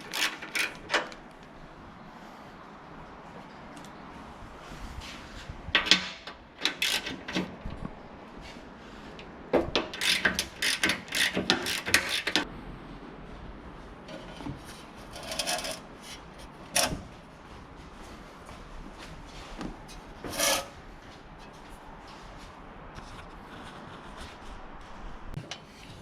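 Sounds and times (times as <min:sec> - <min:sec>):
metal tools clattering and scraping: 0:00.0 - 0:01.2, 0:14.0 - 0:17.1, 0:20.2 - 0:20.8.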